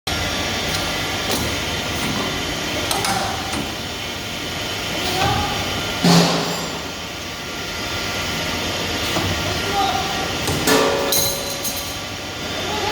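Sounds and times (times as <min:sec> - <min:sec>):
metalworking machinery humming: 0:00.1 - 0:12.9
ringing metal clang: 0:10.7 - 0:12.0.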